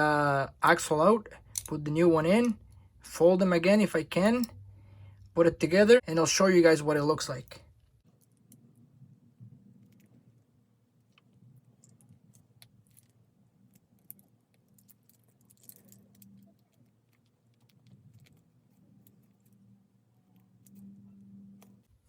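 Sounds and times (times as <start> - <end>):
low steady hum: 0.0 - 22.0
screwdriver clicking and scraping metal: 1.5 - 1.8.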